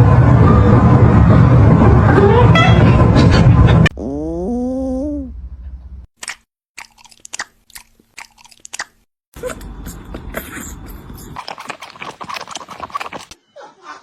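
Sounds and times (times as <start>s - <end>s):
short crunching clicks: 6.2s - 9.1s.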